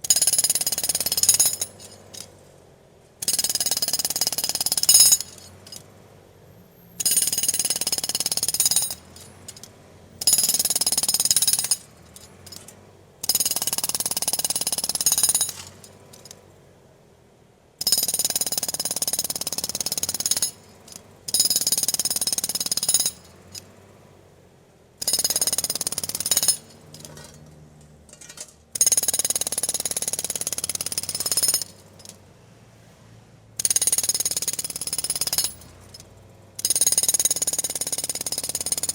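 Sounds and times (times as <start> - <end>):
pneumatic drill hammering: 0.0 - 2.2, 3.2 - 5.8, 7.0 - 16.3, 17.8 - 20.6, 21.3 - 23.6, 25.0 - 27.4, 28.7 - 32.1, 33.6 - 35.7, 36.6 - 38.9.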